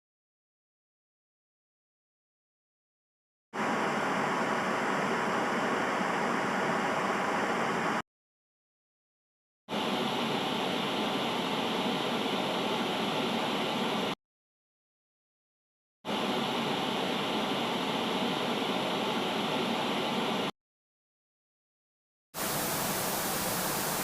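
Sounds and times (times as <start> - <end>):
tv static hiss: 9.8 - 14.2, 16.1 - 20.5, 22.4 - 24.0.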